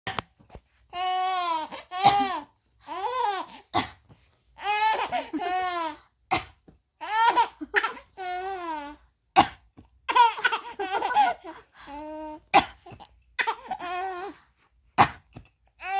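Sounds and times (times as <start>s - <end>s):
baby laughing: 4.6s - 6.0s, 10.1s - 11.6s
adult coughing: 7.3s - 8.1s, 12.6s - 13.7s.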